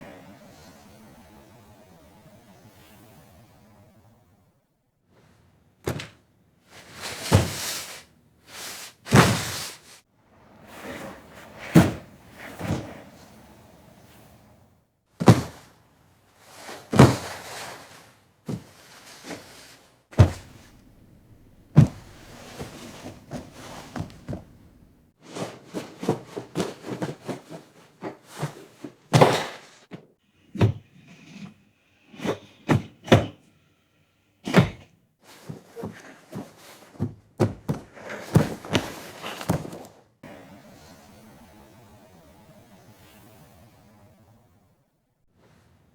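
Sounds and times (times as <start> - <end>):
thuds and knocks: 20.1 - 25.0, 34.5 - 34.9, 37.0 - 39.8.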